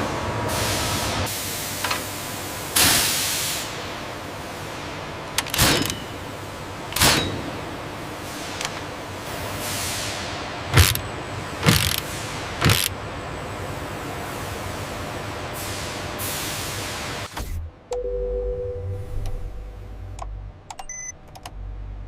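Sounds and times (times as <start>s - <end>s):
machinery hum: 3.6s - 22.0s
sharp knocks: 10.8s - 11.0s, 11.6s - 12.0s, 12.6s - 12.9s.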